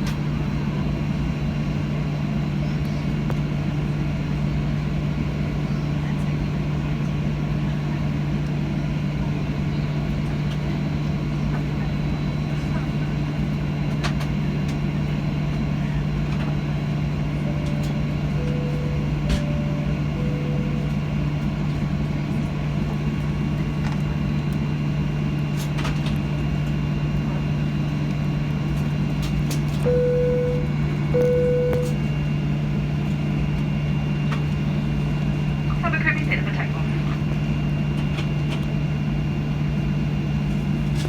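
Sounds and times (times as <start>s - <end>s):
aircraft cabin drone: 0.0s - 41.0s
electronic cabin chimes: 16.9s - 22.8s, 29.7s - 32.9s.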